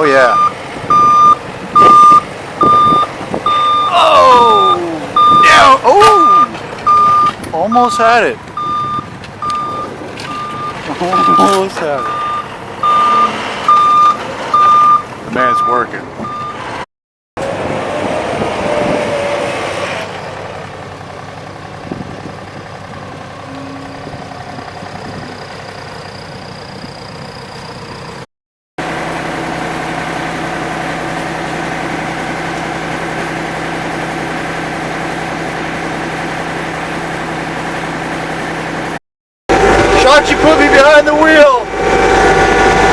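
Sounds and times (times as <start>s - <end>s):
vehicle engine idling: 20.2s - 28.2s.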